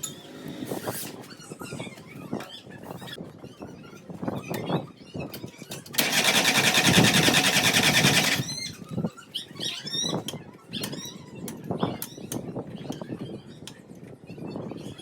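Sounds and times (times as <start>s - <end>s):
small machine rattling: 6.0s - 8.6s
birds chirping: 6.0s - 11.4s.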